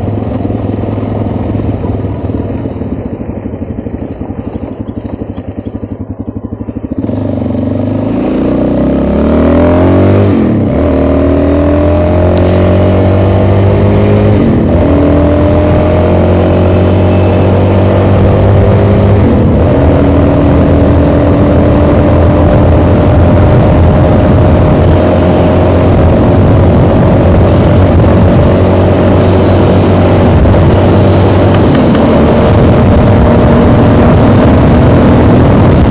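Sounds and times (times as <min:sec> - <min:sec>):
motorcycle engine accelerating: 0:00.0 - 0:35.9
wind noise: 0:09.4 - 0:35.9.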